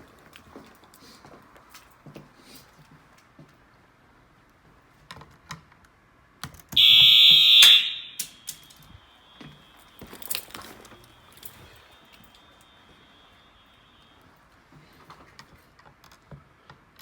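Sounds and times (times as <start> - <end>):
fire alarm horn blast: 6.8 - 14.5
faint steady high tone: 6.8 - 15.0.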